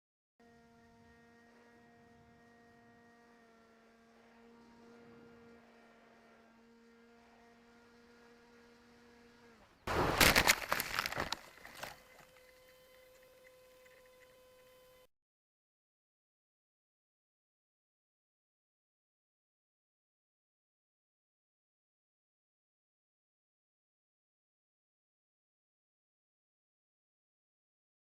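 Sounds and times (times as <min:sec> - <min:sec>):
electric motor whine: 0:00.4 - 0:15.1
plane crash impact and scraping: 0:09.9 - 0:11.9.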